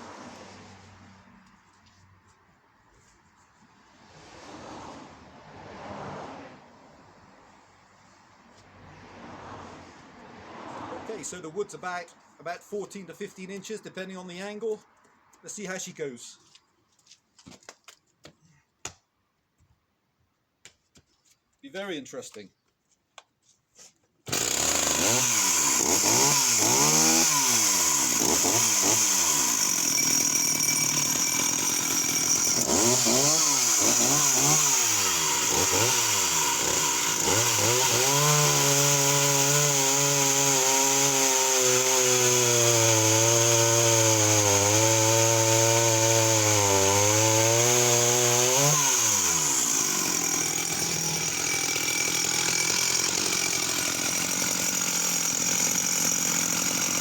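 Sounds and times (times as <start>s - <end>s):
chainsaw cutting log: 24.2s - 57.0s
chainsaw revving: 24.3s - 57.0s.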